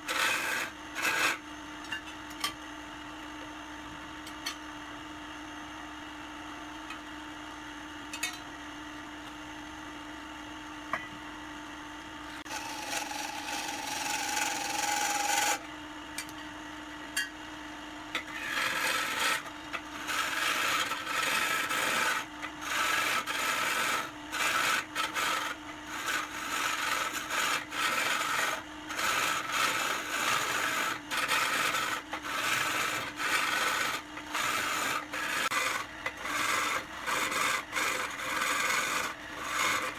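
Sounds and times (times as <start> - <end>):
tool scraping spinning wood: 0.0 - 1.4, 12.4 - 15.7, 18.1 - 39.9
wood lathe motor hum: 0.0 - 1.4, 12.4 - 15.7, 18.1 - 39.9.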